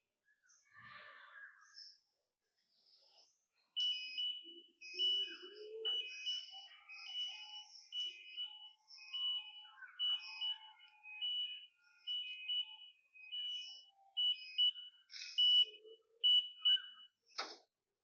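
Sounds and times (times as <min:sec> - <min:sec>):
high electronic beeps: 0:03.8 - 0:17.1.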